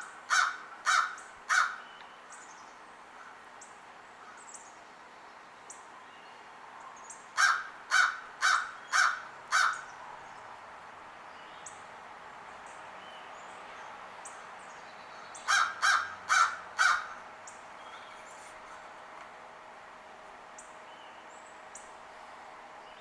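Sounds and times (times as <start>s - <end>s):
crow cawing: 0.3s - 1.8s, 7.4s - 9.9s, 15.5s - 17.2s.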